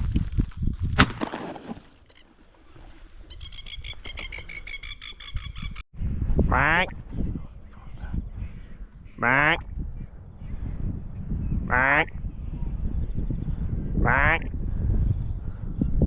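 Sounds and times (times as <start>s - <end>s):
duck call quack: 9.2s - 9.6s, 11.7s - 12.1s, 14.0s - 14.5s.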